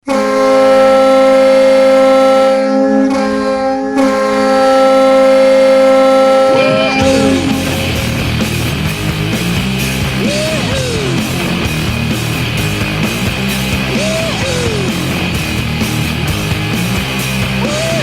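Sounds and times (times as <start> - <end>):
goal horn blowing: 0.1 - 9.2
rock song: 6.2 - 18.0.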